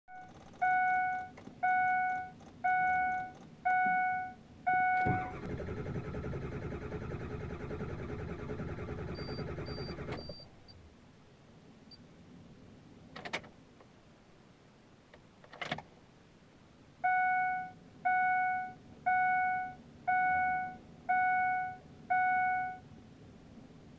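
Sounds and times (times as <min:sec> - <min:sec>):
dashboard warning chime: 0:00.1 - 0:05.4, 0:17.0 - 0:22.8.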